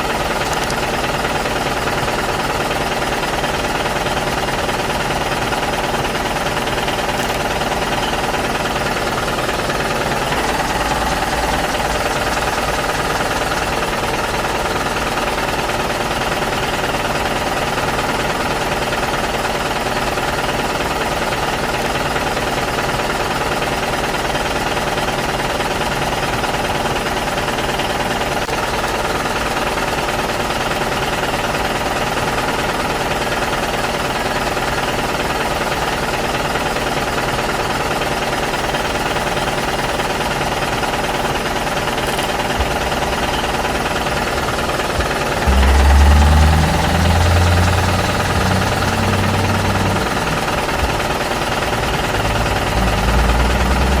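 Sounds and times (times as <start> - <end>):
engine-like low drone: 0.0 - 15.7, 40.9 - 54.0
motor running with rattle: 0.0 - 54.0.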